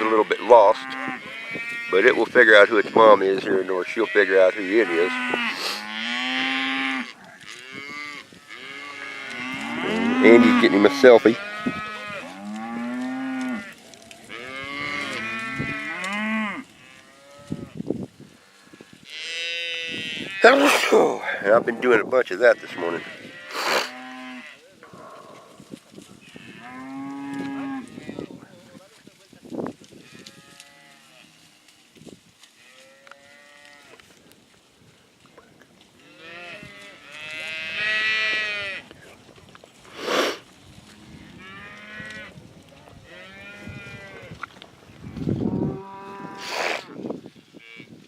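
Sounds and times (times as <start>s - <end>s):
cattle mooing and bawling: 3.4s - 17.8s, 26.4s - 28.3s, 45.4s - 47.0s.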